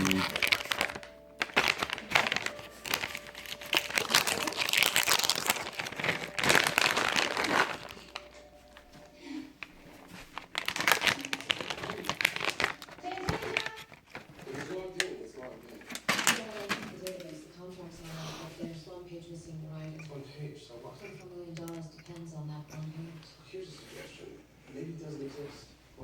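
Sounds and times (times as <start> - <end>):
crinkly material scrunched by hand: 0.0 - 8.8, 9.6 - 17.2.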